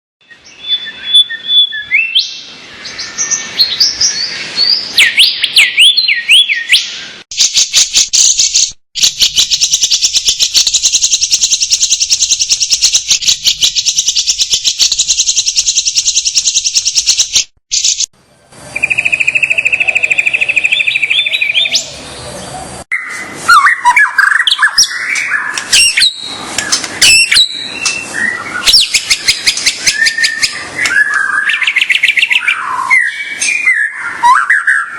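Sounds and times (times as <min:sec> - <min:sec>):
songbird chirping: 0:00.2 - 0:34.9
fast high bird trill: 0:07.3 - 0:18.1
lower steady bird trill: 0:07.4 - 0:18.1.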